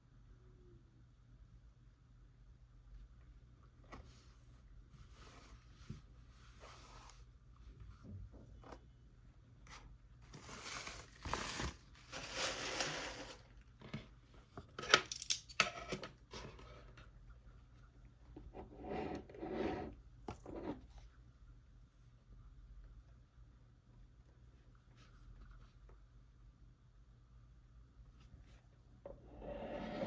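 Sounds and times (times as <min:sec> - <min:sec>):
packaging rustling and tearing: 0:10.3 - 0:13.4.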